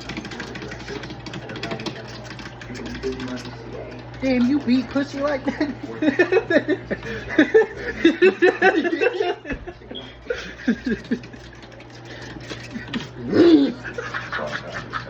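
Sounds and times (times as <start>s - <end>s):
person chuckling: 5.4s - 11.6s, 12.4s - 15.0s.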